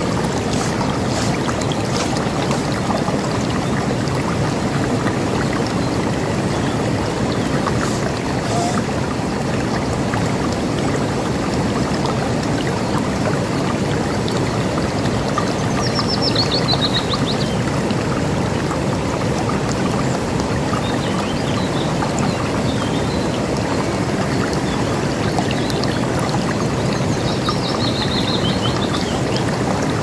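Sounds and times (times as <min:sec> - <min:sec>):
river rushing: 0:00.0 - 0:15.4.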